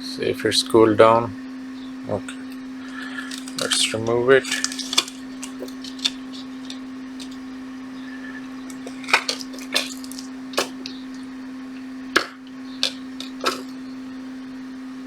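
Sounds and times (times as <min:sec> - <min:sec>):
steady low hum: 0:00.0 - 0:15.0
tools clicking and tapping: 0:03.0 - 0:07.4, 0:08.7 - 0:11.2, 0:12.2 - 0:13.8.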